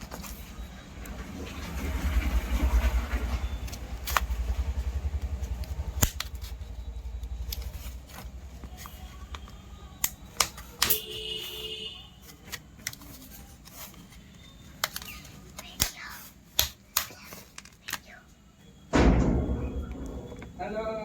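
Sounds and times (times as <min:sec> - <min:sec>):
sharp plastic clicks: 0:05.5 - 0:06.6, 0:08.7 - 0:11.0, 0:14.7 - 0:18.1
handling rumble: 0:18.9 - 0:21.0.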